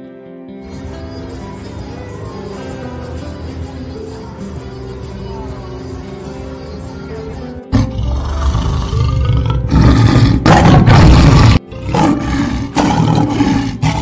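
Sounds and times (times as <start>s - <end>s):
background music: 0.0s - 14.0s
lion roaring: 7.7s - 14.0s.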